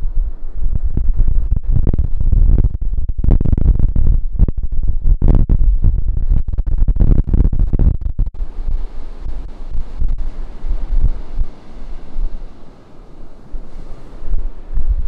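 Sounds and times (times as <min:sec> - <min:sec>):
wind buffeting microphone: 0:00.0 - 0:15.0
ocean surf: 0:08.4 - 0:15.0.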